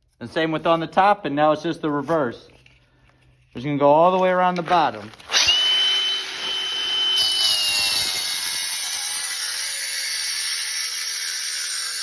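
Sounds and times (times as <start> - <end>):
power saw cutting clay pipe: 4.8 - 12.0.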